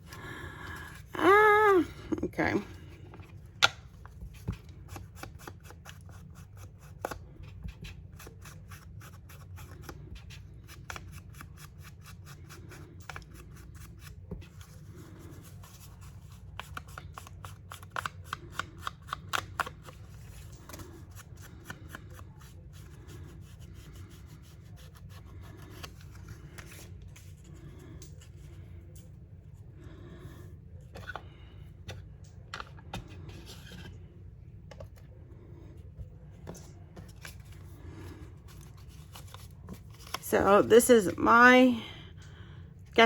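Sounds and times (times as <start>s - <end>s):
paper rustling: 36.4s - 40.3s.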